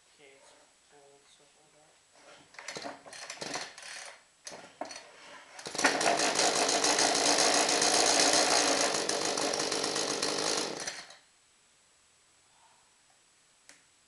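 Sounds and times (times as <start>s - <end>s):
chainsaw engine running: 5.6s - 11.2s.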